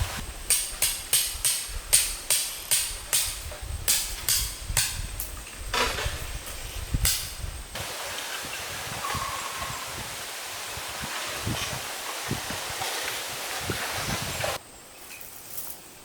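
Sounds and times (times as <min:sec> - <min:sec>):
hammer striking tent stake: 0:00.5 - 0:05.0.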